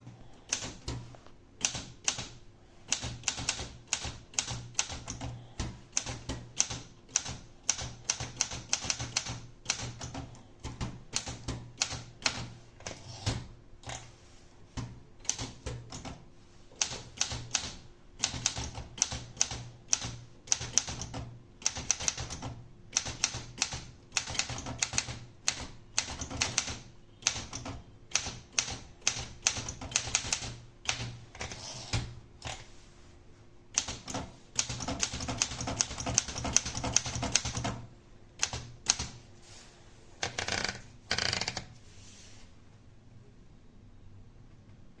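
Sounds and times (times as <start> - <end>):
typewriter keys striking: 1.6 - 12.5, 16.8 - 31.5, 33.8 - 37.8.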